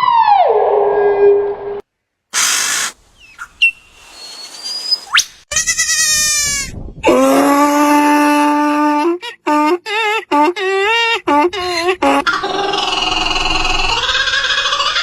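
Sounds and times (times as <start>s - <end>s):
animal calls: 12.1s - 15.0s.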